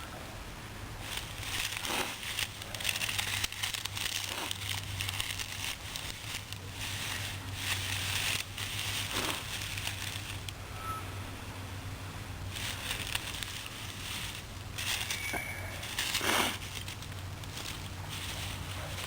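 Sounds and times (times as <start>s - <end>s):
dry grass crinkling: 0.8s - 19.0s
hissing breath puffs: 1.0s - 3.5s, 6.2s - 9.9s, 14.0s - 19.0s.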